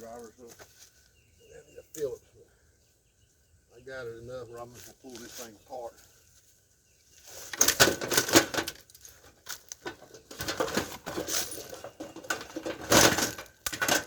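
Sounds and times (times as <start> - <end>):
plastic casing snapping and rattling: 9.6 - 14.0.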